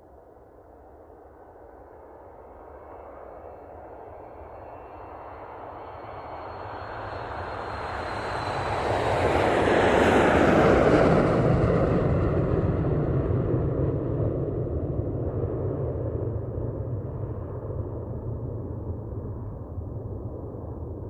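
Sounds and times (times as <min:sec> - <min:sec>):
jet taking off: 0:04.6 - 0:21.0.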